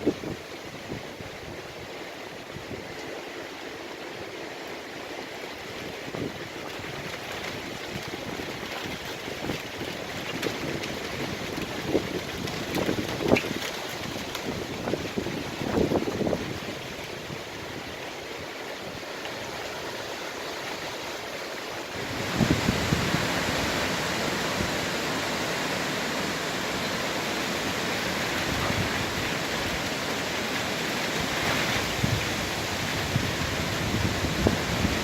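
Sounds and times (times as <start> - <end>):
heavy rain hissing: 10.6 - 35.0.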